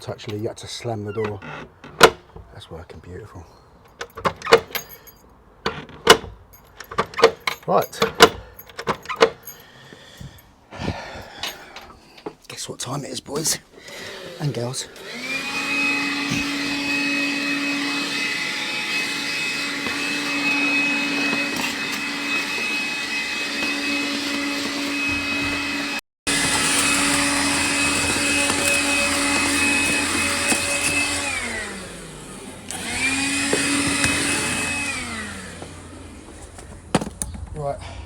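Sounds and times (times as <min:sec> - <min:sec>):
vacuum cleaner running: 0:13.7 - 0:37.1.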